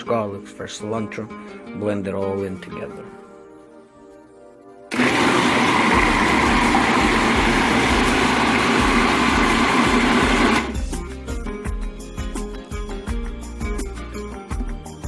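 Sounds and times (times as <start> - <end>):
electric blender running: 4.9 - 10.8.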